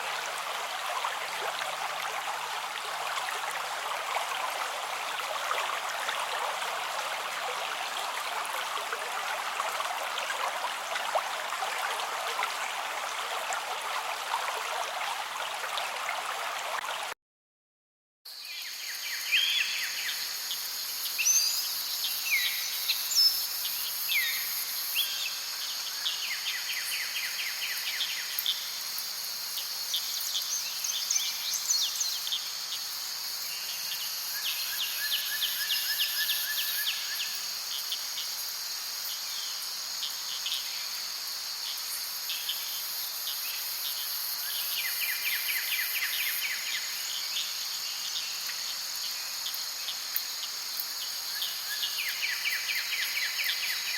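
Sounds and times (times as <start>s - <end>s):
insects droning: 18.3s - 53.9s.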